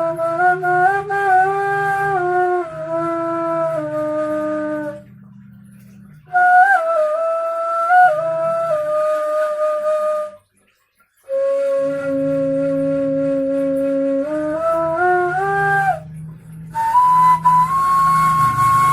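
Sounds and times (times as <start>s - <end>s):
end-blown flute breathy notes: 11.3s - 18.9s.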